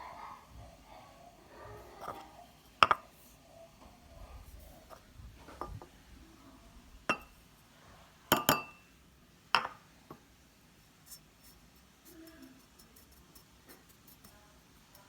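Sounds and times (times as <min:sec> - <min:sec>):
glass objects clinking: 0:07.1 - 0:07.3, 0:08.3 - 0:08.8.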